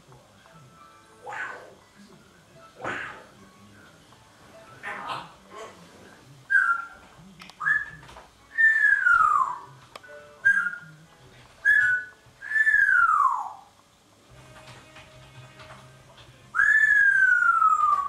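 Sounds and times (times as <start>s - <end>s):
parrot whistling: 6.5s - 7.0s, 7.6s - 10.9s, 11.6s - 13.7s, 16.5s - 18.0s.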